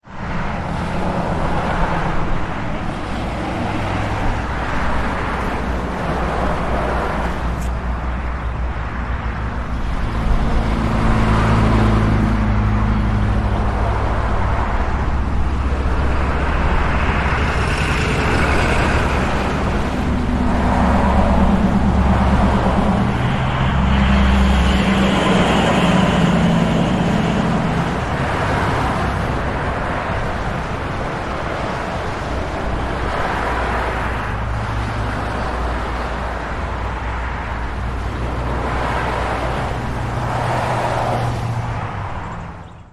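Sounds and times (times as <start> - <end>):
traffic engines idling: 0.0 - 42.9.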